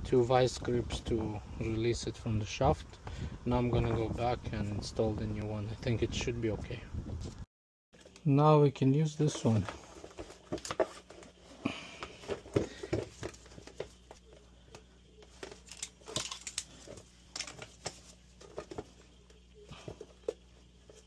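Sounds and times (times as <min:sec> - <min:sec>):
parts clicking and rustling: 0:09.2 - 0:21.0.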